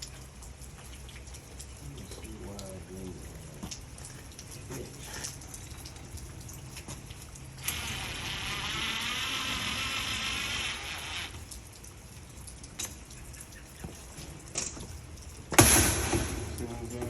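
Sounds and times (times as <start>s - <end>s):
power tool motor buzzing: 7.6s - 11.4s.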